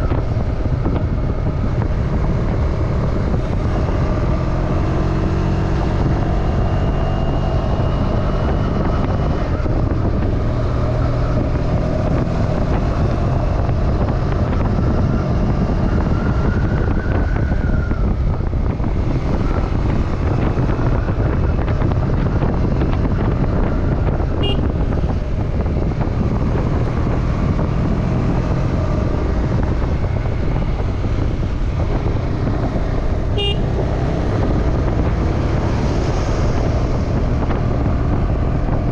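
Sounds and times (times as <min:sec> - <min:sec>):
motorcycle engine running: 0:00.0 - 0:38.9
wind rushing over microphone: 0:00.0 - 0:38.9.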